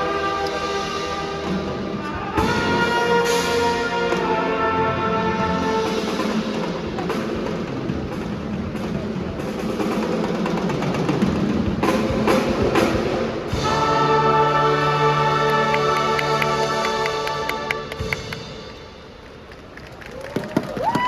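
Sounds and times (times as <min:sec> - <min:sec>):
brass chord: 0:00.0 - 0:07.1, 0:11.8 - 0:19.1
snare and bass drum rolls: 0:05.6 - 0:21.0.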